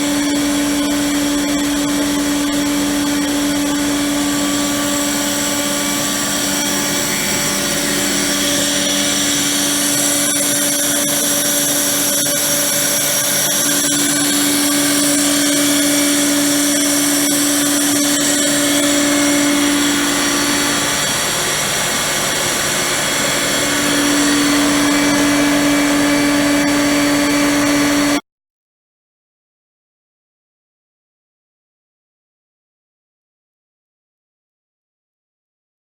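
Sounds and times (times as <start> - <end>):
air compressor droning: 0.0 - 28.2
high whine: 0.0 - 28.2.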